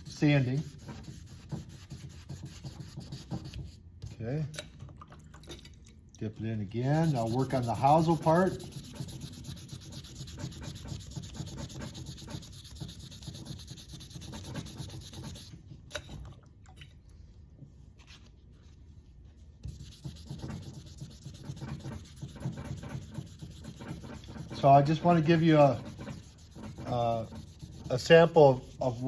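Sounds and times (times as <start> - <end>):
sandpaper rubbing on metal: 0.0 - 3.6, 6.8 - 15.5, 19.7 - 29.0.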